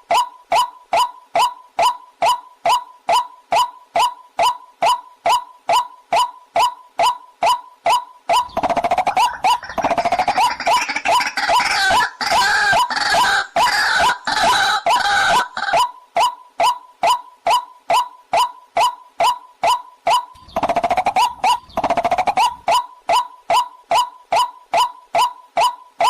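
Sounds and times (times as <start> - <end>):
waterhen call: 0.1 - 16.0, 16.6 - 25.8
harsh bird chattering: 8.3 - 15.9, 20.1 - 24.9.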